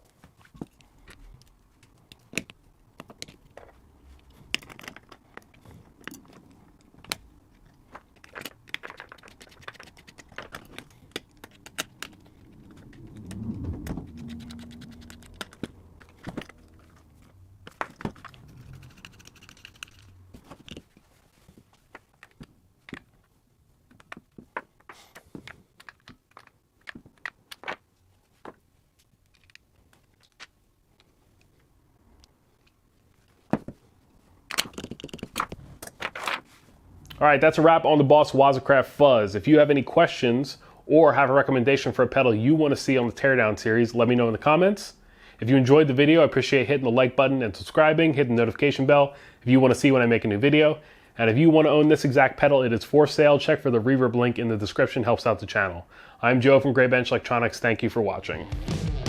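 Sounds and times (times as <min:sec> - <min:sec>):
small clicks and taps of parts: 0:00.6 - 0:12.2, 0:29.0 - 0:31.6
low rumble with hum: 0:11.7 - 0:20.5.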